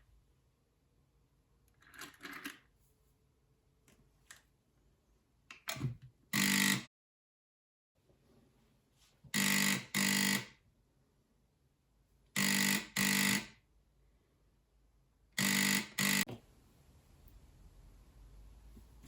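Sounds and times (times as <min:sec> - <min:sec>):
telephone buzzer ringing: 0:06.4 - 0:06.9, 0:09.4 - 0:10.6, 0:12.4 - 0:13.6, 0:15.4 - 0:16.3.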